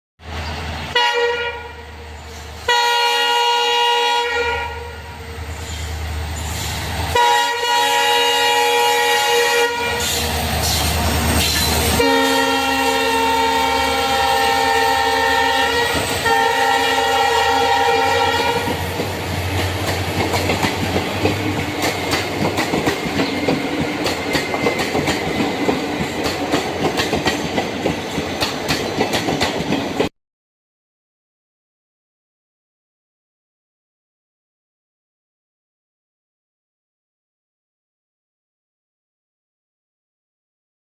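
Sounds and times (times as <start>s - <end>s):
train horn blasts: 0.9s - 2.0s, 2.6s - 5.4s, 7.1s - 10.3s, 11.8s - 18.9s
train wheels clickety-clack: 10.0s - 12.0s, 18.4s - 30.1s.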